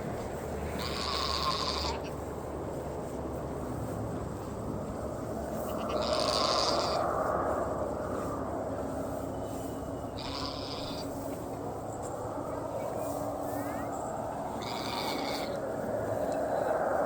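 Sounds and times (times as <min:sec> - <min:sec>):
steady background noise: 0:00.0 - 0:17.0
goats bleating hoarsely: 0:00.7 - 0:02.2, 0:05.6 - 0:07.0, 0:10.2 - 0:11.2, 0:14.6 - 0:15.6.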